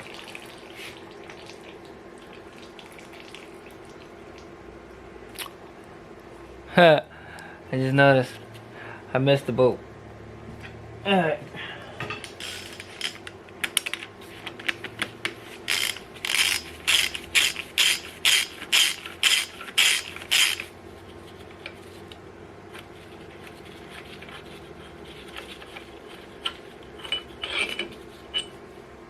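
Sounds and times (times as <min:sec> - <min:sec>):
ratchet wrench clicking: 0:15.7 - 0:20.7.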